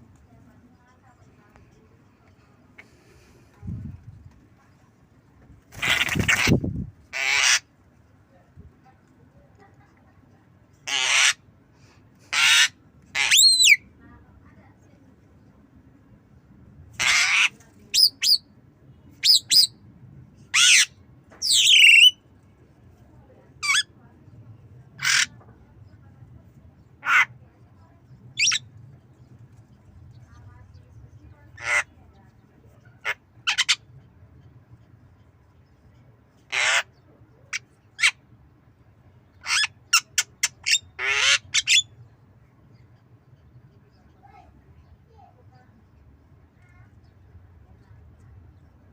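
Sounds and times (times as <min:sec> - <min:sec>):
bird giving rasping calls: 0:05.7 - 0:07.7, 0:10.8 - 0:11.4, 0:12.3 - 0:13.8, 0:17.0 - 0:18.4, 0:20.5 - 0:22.2, 0:27.0 - 0:27.4, 0:28.4 - 0:28.6, 0:31.6 - 0:32.0, 0:36.5 - 0:38.2, 0:39.4 - 0:41.9
bird harsh rasp: 0:05.7 - 0:07.7, 0:12.3 - 0:13.7
bird slurred gliding call: 0:20.6 - 0:22.2.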